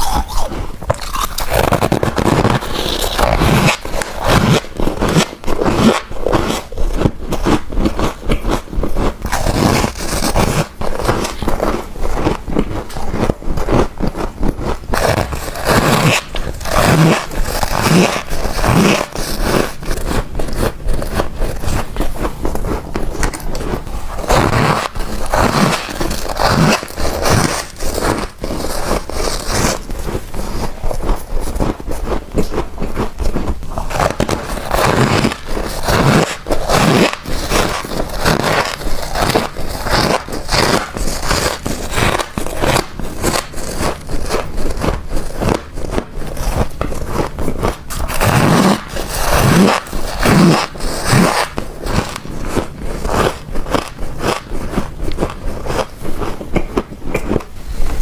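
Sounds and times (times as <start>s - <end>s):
crunching frost chunks: 0.0s - 8.6s, 9.2s - 57.4s.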